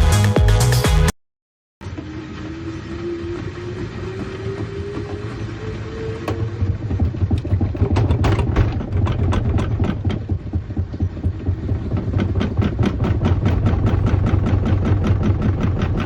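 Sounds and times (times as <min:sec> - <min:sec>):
washing machine motor hum: 0:01.8 - 0:16.0
knocking and rattling cabinet: 0:06.3 - 0:16.0.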